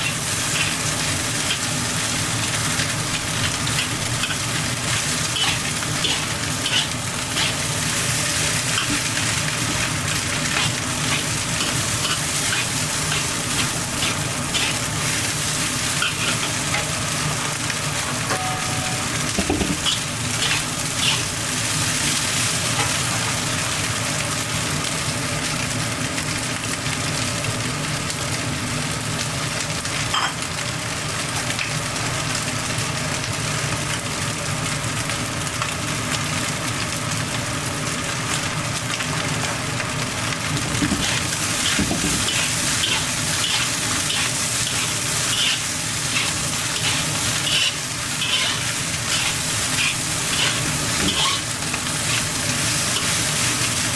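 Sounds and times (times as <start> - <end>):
rice sizzling in a pan: 0.0 - 53.9
spatula scraping a pan: 3.8 - 9.1, 19.8 - 21.3, 40.8 - 53.8.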